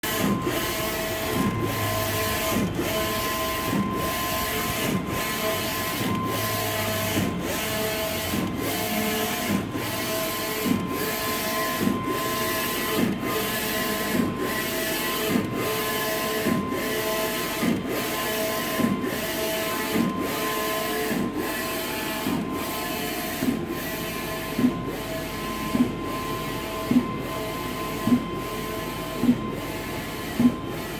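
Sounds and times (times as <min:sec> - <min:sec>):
steady motor whine: 0:00.2 - 0:09.2.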